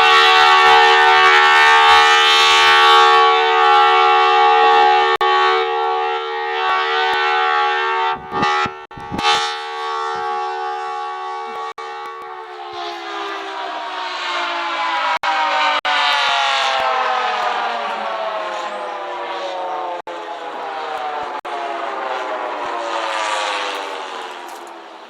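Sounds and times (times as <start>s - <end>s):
warning siren steady tone: 0.0s - 25.0s
wind buffeting microphone: 7.1s - 13.7s.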